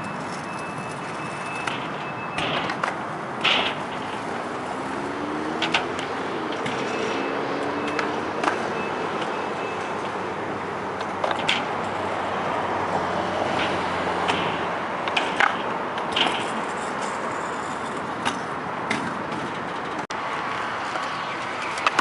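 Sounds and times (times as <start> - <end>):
scooter wheels rolling on concrete: 0.0 - 22.0
scooter clacking on ground: 13.5 - 20.1, 20.9 - 22.0.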